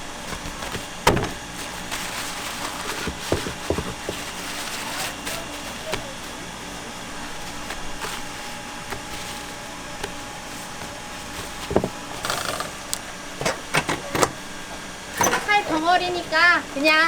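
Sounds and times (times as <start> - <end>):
steady machine hum: 0.0 - 17.0
knocks and clatter of fish cutting: 0.4 - 1.5, 2.9 - 4.4.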